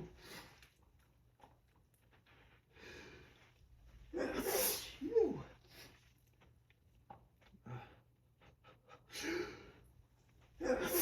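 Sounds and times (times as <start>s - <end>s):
person sneezing: 4.1s - 5.5s, 10.6s - 11.0s.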